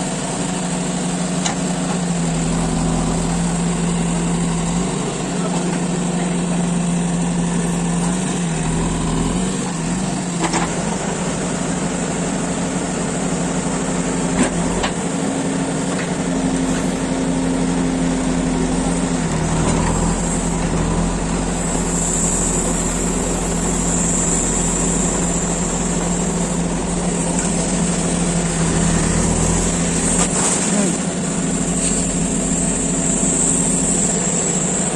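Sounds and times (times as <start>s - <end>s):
diesel engine running: 0.0s - 34.9s
high steady whine: 16.9s - 34.9s.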